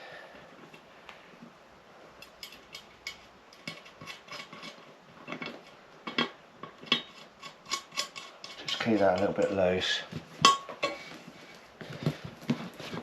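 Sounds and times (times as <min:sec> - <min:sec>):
light clicks and metallic clinks: 0:02.2 - 0:11.1.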